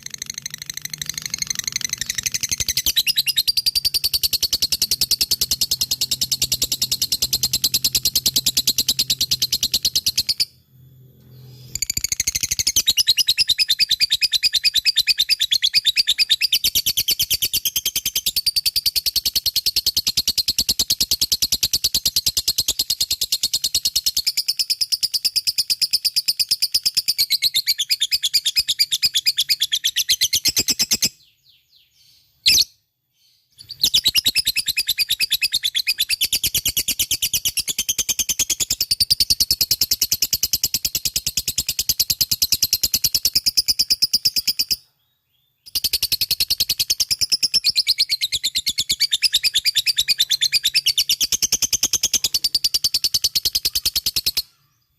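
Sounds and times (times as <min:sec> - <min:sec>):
bird chattering trill: 0:00.0 - 0:10.5, 0:45.7 - 0:54.9.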